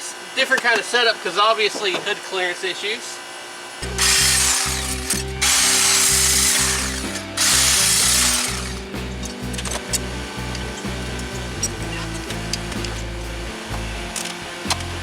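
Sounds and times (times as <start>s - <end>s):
mechanical tool noise: 3.8s - 9.9s
background music with pulsing bass: 3.8s - 15.0s.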